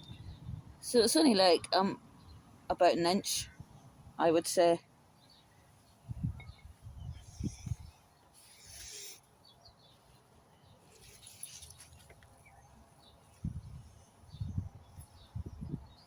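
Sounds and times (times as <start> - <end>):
faint birds chirping: 0.0 - 16.0
hissing rustles: 7.2 - 9.3, 10.8 - 14.4.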